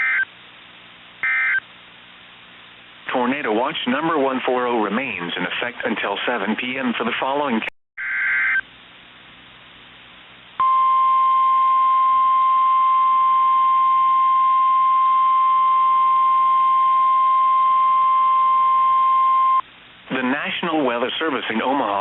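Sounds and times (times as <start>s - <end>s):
loud steady alarm tone: 0.0s - 0.3s, 1.2s - 1.6s
faint radio hiss: 0.0s - 7.7s, 8.6s - 10.6s, 19.6s - 22.0s.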